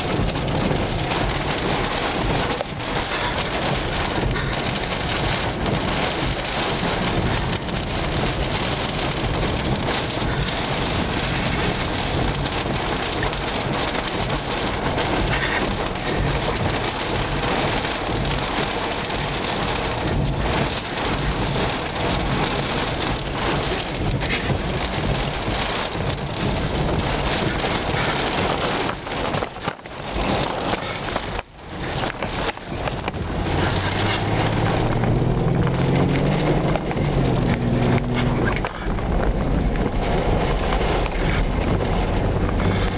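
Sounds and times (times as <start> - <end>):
heavy rain: 0.0 - 42.9
low thunder rumble: 0.0 - 42.9
wind: 0.0 - 42.9.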